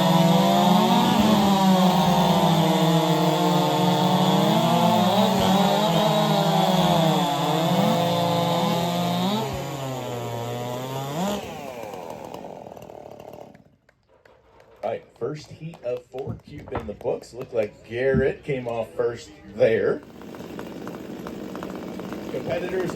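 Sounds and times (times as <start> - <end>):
chainsaw revving sharply: 0.0 - 13.6, 20.0 - 22.9
racing chainsaws cutting wood: 0.0 - 13.8, 19.6 - 22.9.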